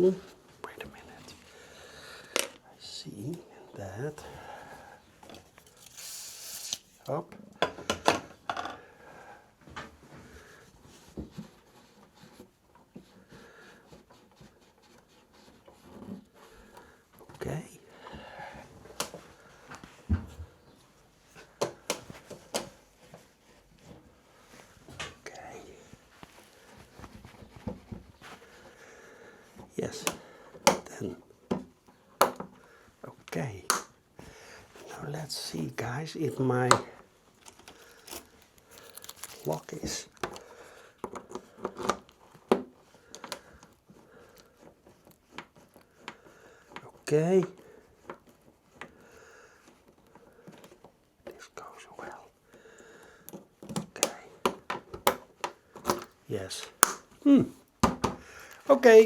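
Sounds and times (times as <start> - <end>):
plastic parts being handled: 5.2 - 8.3, 36.6 - 42.2, 55.7 - 56.9
clicks and knocks of tools: 37.4 - 40.4.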